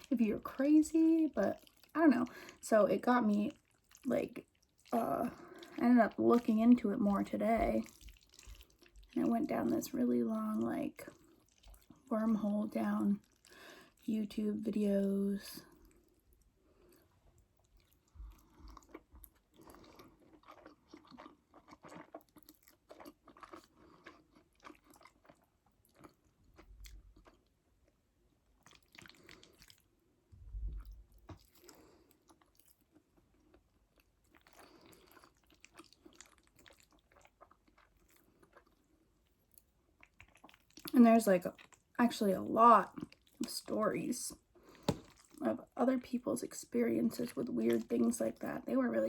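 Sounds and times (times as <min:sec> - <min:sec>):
wet chewing mouth clicks: 0:07.8 - 0:09.2, 0:17.7 - 0:27.4, 0:40.0 - 0:41.8.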